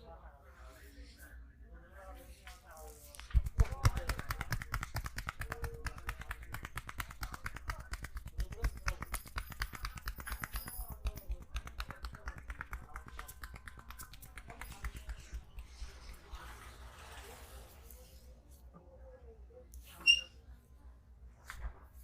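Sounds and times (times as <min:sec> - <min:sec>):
hands tapping on a head: 0:03.3 - 0:15.7.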